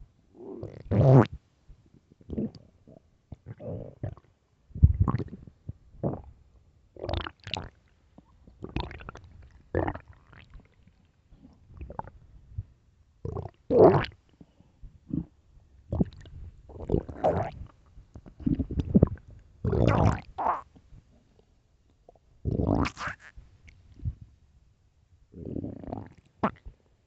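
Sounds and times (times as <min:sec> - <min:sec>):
stomach growling: 0:00.4 - 0:01.4, 0:02.2 - 0:06.3, 0:07.0 - 0:12.2, 0:13.3 - 0:14.2, 0:15.0 - 0:20.8, 0:22.1 - 0:23.4, 0:25.4 - 0:26.8.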